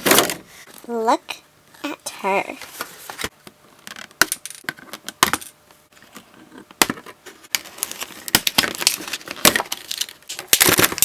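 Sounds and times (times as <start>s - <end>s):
toy packaging clicks and crinkles: 7.6s - 11.0s.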